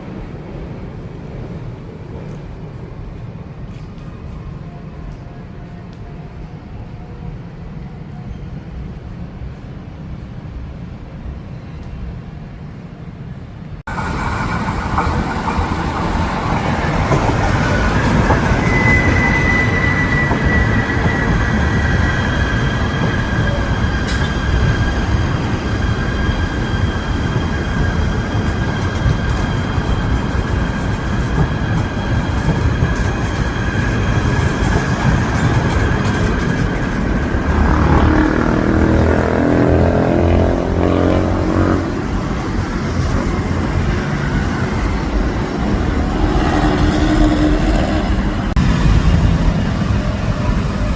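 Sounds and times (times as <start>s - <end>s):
high-pitched squealing tones: 17.4s - 39.0s.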